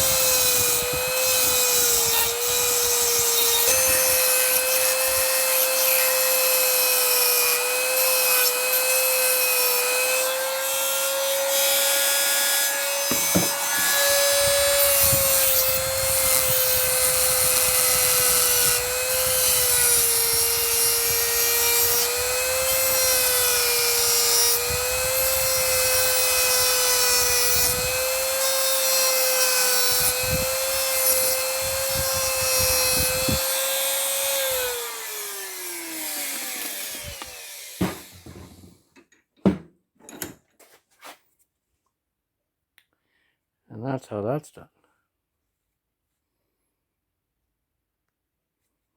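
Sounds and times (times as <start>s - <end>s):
rotary tool grinding metal: 0.0s - 38.8s.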